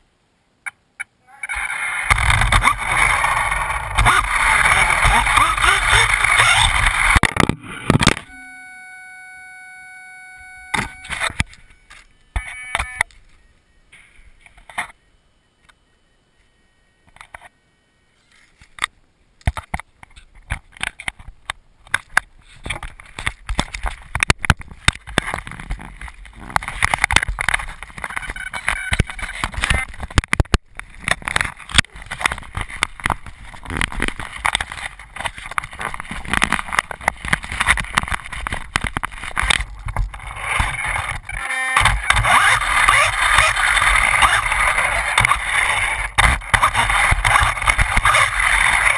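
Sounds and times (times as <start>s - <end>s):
rc car motor whine: 1.5s - 13.5s, 40.2s - 48.9s.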